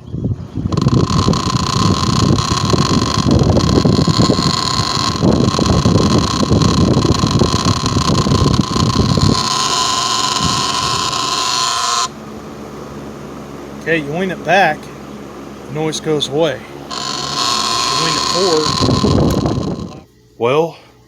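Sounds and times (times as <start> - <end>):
fan rattling: 0.0 - 20.1
fan motor whine and hum: 0.0 - 21.0.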